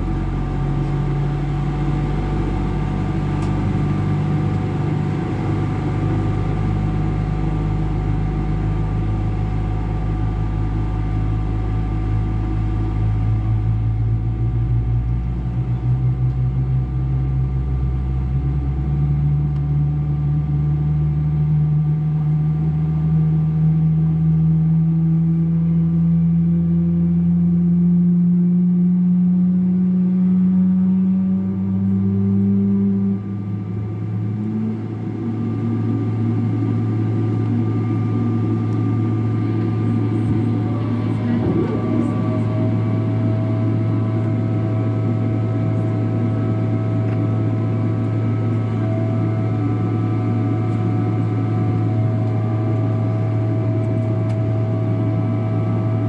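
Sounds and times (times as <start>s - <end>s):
jet engine spooling up: 34.2s - 56.0s.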